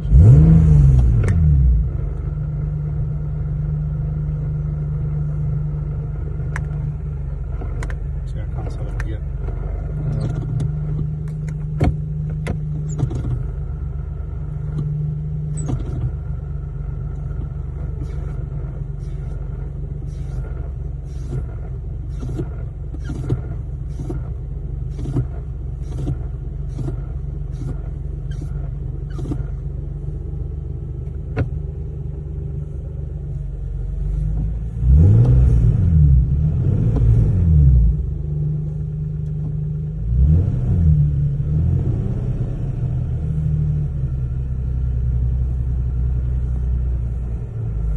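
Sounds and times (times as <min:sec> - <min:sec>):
engine revving: 0:00.0 - 0:03.1, 0:17.0 - 0:29.7, 0:34.1 - 0:39.4, 0:40.0 - 0:44.3
car engine running: 0:00.0 - 0:47.9.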